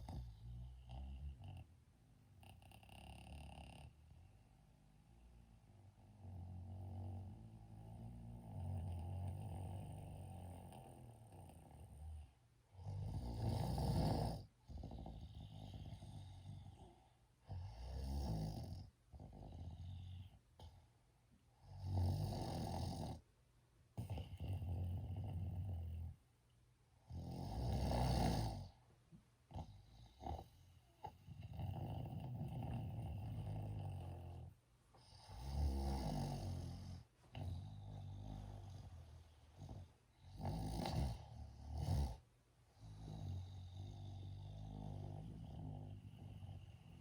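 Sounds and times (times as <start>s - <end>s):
person snoring: 6.2s - 20.3s, 27.1s - 28.7s, 29.5s - 42.2s, 42.8s - 47.0s.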